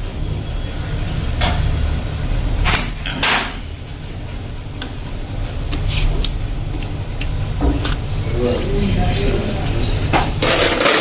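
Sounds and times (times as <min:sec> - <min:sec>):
low workshop rumble: 0:00.0 - 0:11.0
metal tools clattering: 0:10.4 - 0:11.0.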